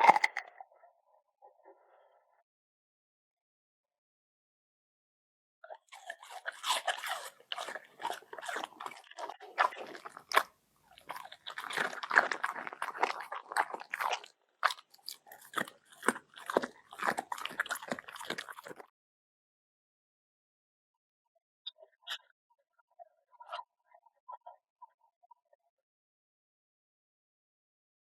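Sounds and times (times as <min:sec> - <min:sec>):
pet crunching food: 0:00.0 - 0:00.4, 0:05.9 - 0:18.9.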